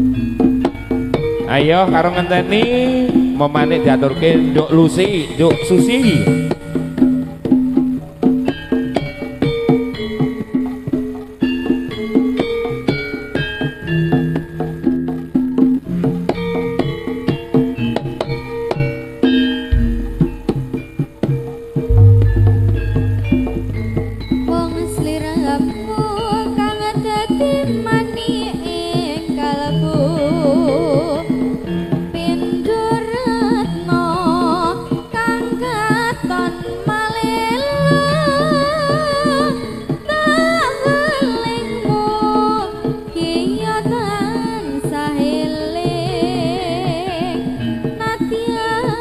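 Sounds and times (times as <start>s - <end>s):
hand drum strokes: 19.7s - 21.2s, 21.9s - 29.6s
gong chime notes: 19.8s - 20.9s, 21.9s - 26.5s
high melody with vibrato: 19.8s - 20.9s, 21.9s - 26.5s.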